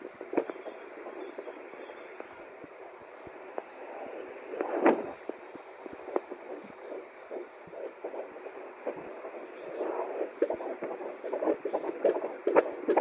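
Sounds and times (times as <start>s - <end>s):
heartbeat thumps: 0.0s - 13.0s.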